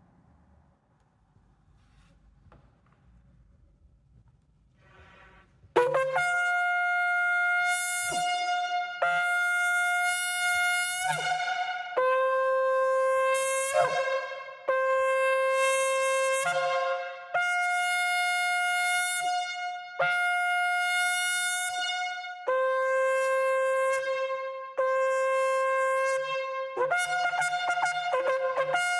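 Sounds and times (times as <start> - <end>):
shofar blasts: 5.8 - 28.9.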